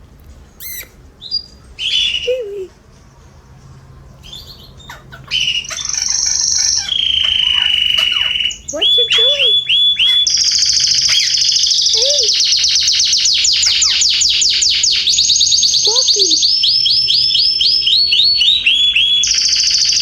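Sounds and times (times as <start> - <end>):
canaries singing trills: 0.5 - 20.0
low bird chirps: 4.1 - 20.0.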